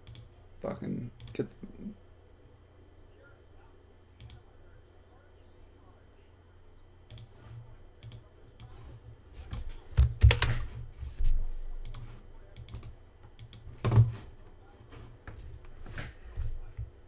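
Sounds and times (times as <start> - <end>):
typing on computer keyboard: 9.5 - 10.6, 12.6 - 13.6.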